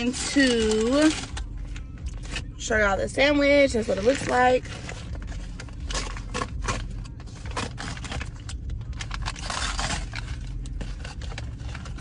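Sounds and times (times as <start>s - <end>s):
steady low hum: 0.0s - 12.0s
paper wrapper crinkling: 3.8s - 12.0s.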